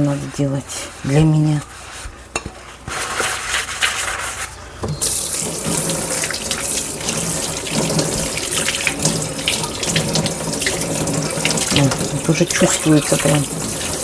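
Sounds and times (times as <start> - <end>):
scrubbing a dish: 0.0 - 14.0
tap running into sink: 5.0 - 14.0.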